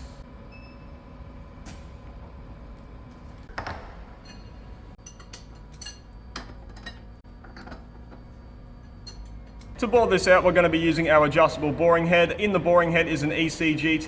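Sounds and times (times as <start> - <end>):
low machine hum: 0.0 - 14.0
metal tools clinking: 4.2 - 7.8, 8.8 - 9.8.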